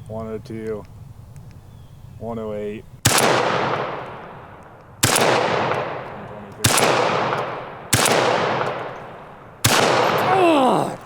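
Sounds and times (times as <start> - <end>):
shotgun shots with echo: 3.1 - 4.3, 5.0 - 9.0, 9.6 - 10.2.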